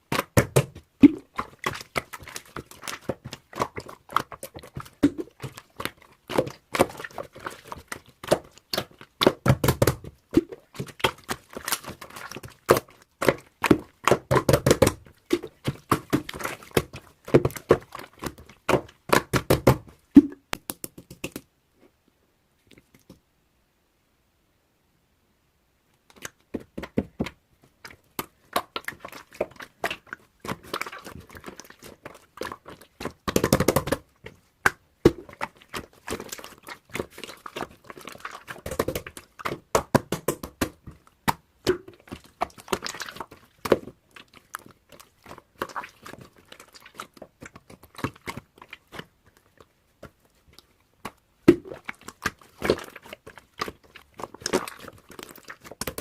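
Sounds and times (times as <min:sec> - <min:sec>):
crunching or crinkling noises: 0:00.0 - 0:20.6, 0:26.0 - 0:56.0
close-up clicks and taps: 0:16.8 - 0:21.5.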